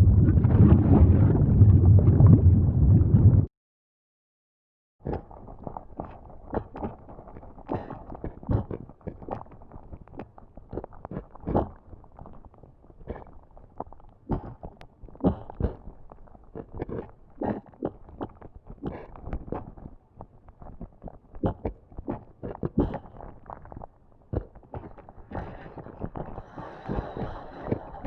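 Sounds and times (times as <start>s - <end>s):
lava bubbling and popping: 0.0s - 3.5s, 5.0s - 28.0s
low rumble: 0.0s - 3.5s.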